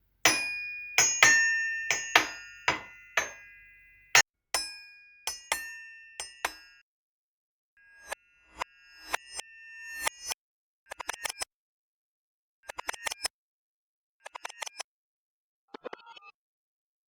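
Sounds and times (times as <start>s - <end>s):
glockenspiel notes ringing: 0.3s - 3.9s.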